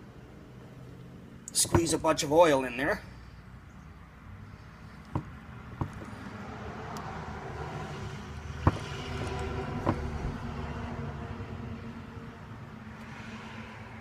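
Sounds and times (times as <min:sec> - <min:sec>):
motor vehicle engine passing: 0:05.6 - 0:12.5.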